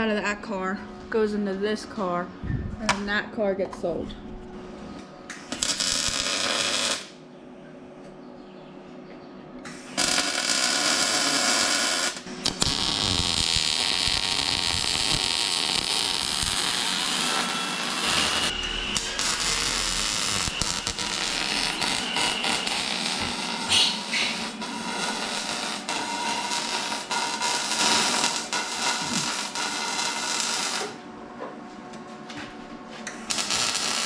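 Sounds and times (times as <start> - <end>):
handheld power tool running: 9.9 - 31.0.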